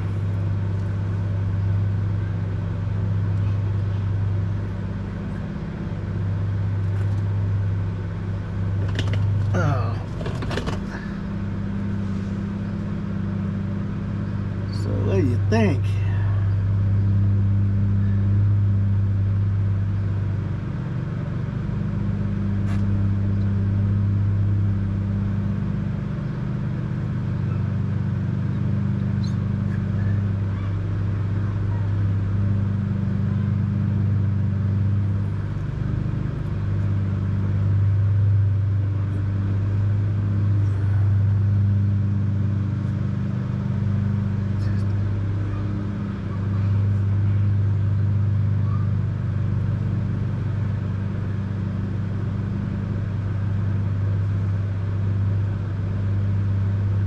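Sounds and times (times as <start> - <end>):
low engine-like hum: 0.0 - 57.0.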